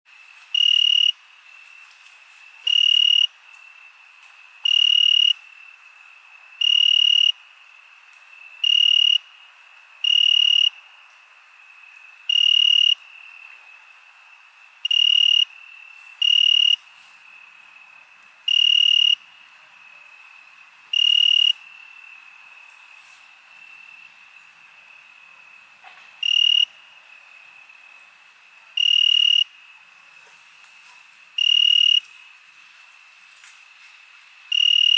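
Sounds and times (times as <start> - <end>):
crickets trilling: 0.1 - 34.9
loud high-pitched cricket chirp: 0.1 - 34.9.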